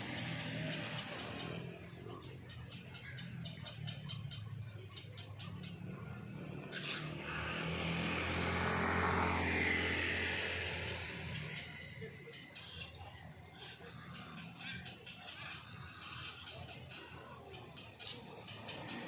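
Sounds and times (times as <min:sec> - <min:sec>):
insects chirring: 0:00.0 - 0:03.8
vehicle engine passing by: 0:00.0 - 0:19.0.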